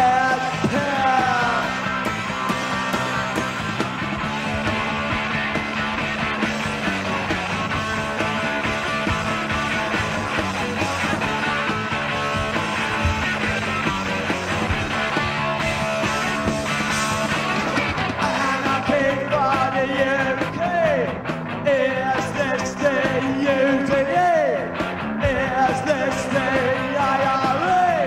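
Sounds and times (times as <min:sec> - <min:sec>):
punk rock band playing: 0:00.0 - 0:28.0.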